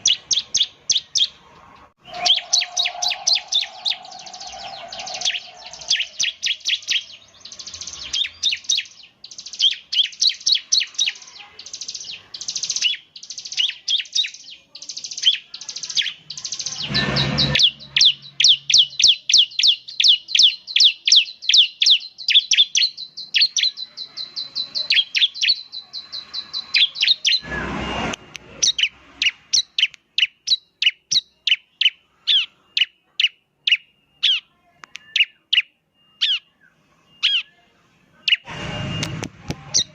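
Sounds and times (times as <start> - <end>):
bird singing high trills: 2.0 - 39.9.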